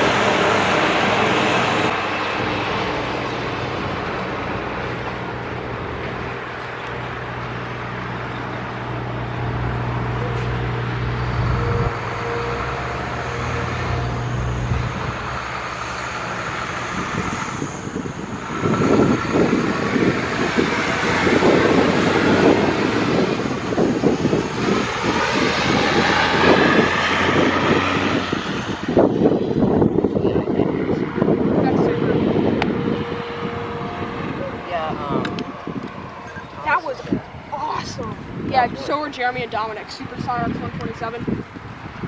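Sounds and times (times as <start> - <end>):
road traffic engine hum: 0.0 - 42.0
rough vehicle noise: 0.0 - 42.0.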